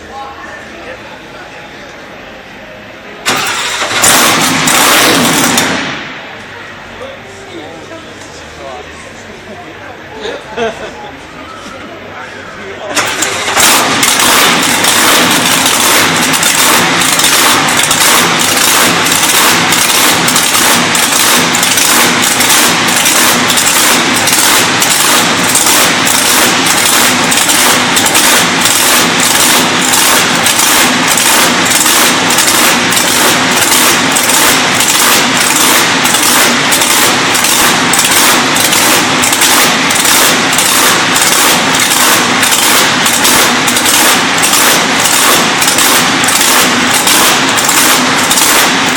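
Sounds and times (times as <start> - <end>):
speed boat engine running: 13.6 - 48.9.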